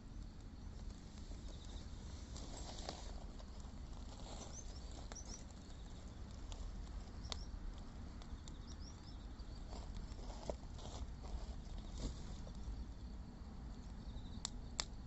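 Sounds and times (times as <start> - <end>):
wood fire crackling: 0.0 - 15.0
high bird chirps: 4.3 - 6.2, 8.3 - 9.7.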